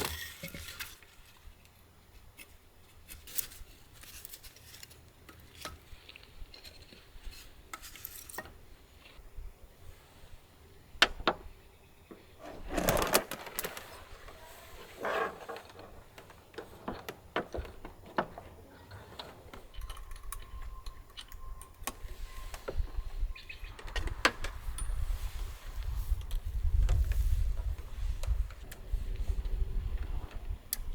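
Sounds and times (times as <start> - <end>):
short rustles: 12.1 - 17.8
clicks and knocks of handling: 12.1 - 22.0.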